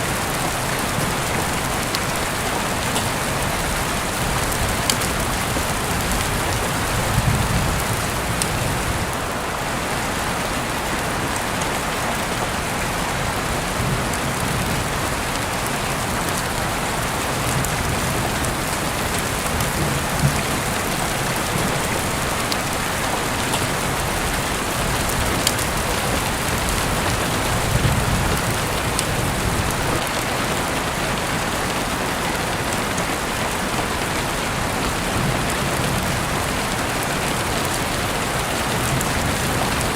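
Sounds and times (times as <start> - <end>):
dense rain falling: 0.0 - 39.9.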